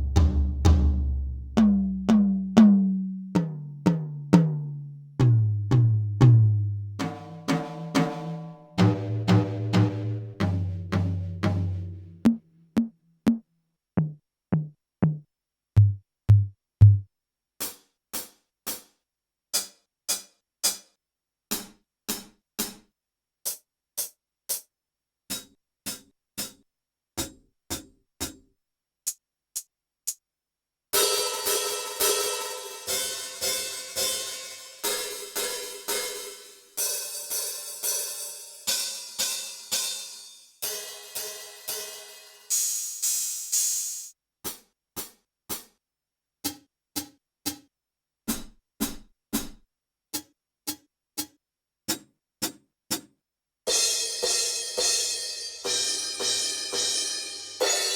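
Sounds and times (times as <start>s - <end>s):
electronic tom hits: 7.2s - 13.4s
cymbal crashes: 53.7s - 57.9s.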